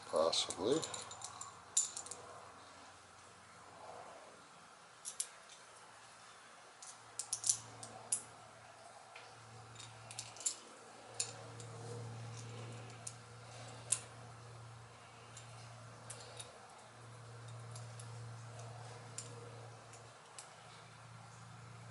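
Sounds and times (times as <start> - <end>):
wrench clicking on metal: 17.4 - 20.5.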